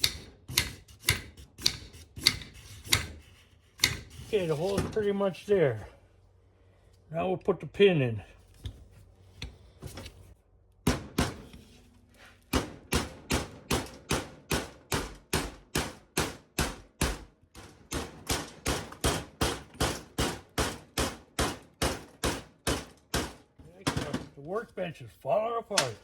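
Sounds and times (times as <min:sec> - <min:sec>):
hammer tapping steel pin: 0:00.0 - 0:03.2, 0:03.8 - 0:04.1.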